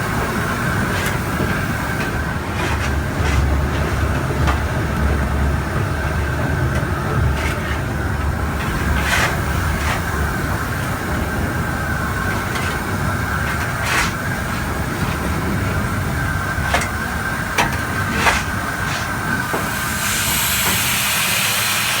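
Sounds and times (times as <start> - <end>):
steam locomotive rumble: 0.0 - 22.0
sharp knocks and clanks: 0.2 - 20.9
loud steam hiss: 8.0 - 22.0.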